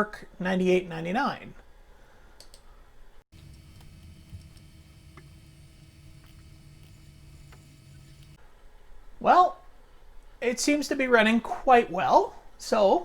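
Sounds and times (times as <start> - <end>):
faint clicks: 2.4 - 2.7, 3.4 - 8.4
computer hum: 3.3 - 8.4.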